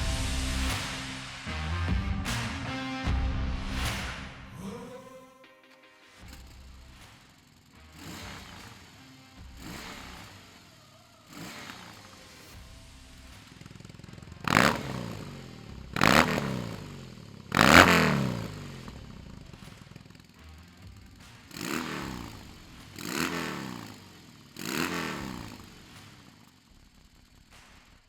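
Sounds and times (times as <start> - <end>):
motorcycle engine revving: 6.2 - 28.0.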